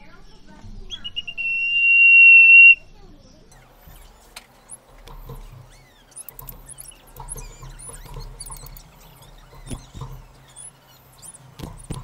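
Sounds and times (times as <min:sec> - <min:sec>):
birds chirping: 0:03.5 - 0:12.0
steady low hum: 0:03.5 - 0:12.0
birds gliding calls: 0:03.6 - 0:12.0
sharp knocks: 0:03.6 - 0:12.0.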